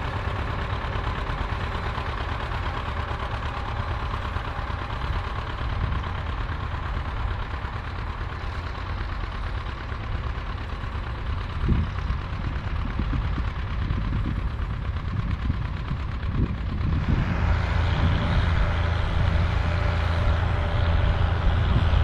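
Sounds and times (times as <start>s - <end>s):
tractor engine rumbling: 0.0s - 22.0s.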